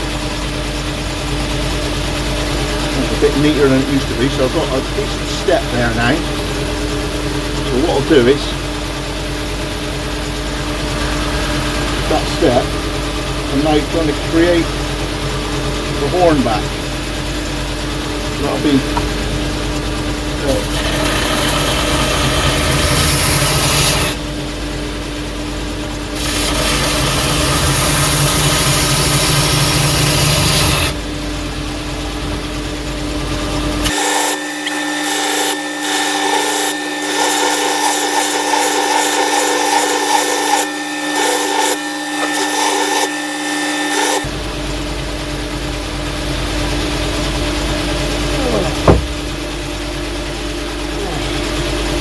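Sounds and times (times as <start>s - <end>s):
motor hum: 0.0s - 52.0s
grinder grinding metal: 2.9s - 6.7s, 10.8s - 24.2s, 26.2s - 31.0s, 33.8s - 44.3s.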